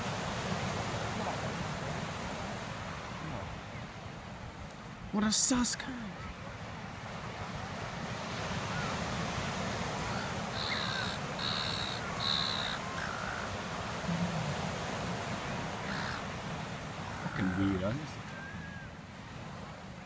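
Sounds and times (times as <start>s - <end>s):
surf rushing: 0.0s - 20.0s
wind on microphone: 6.2s - 17.2s
seagulls squawking: 9.8s - 19.0s.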